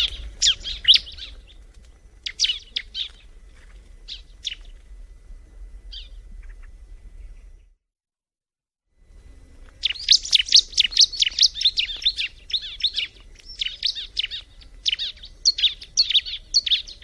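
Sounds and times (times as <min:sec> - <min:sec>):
faint low hum: 0:00.0 - 0:07.8, 0:08.9 - 0:17.0
bird high sharp chirps: 0:09.8 - 0:17.0.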